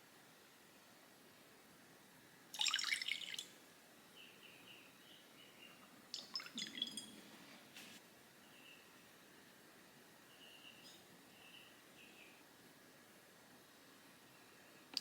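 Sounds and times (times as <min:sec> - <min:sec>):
faint high chirps: 0:04.2 - 0:07.2, 0:10.3 - 0:12.4.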